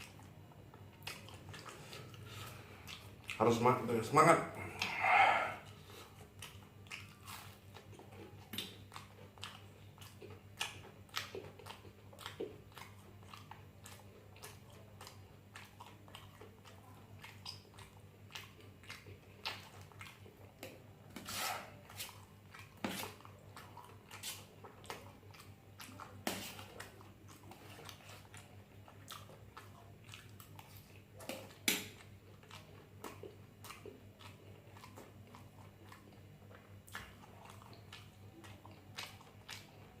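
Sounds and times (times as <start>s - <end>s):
person chewing food: 0.0s - 40.0s.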